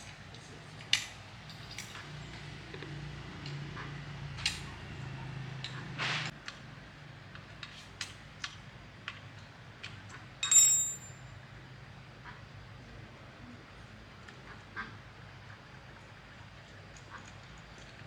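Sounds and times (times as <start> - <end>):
ringing metal clink: 10.4 - 11.3.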